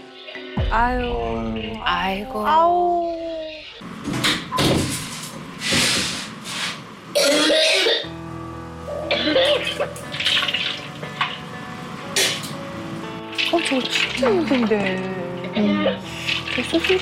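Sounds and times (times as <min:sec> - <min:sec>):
girl coughing harshly: 0:07.2 - 0:08.0.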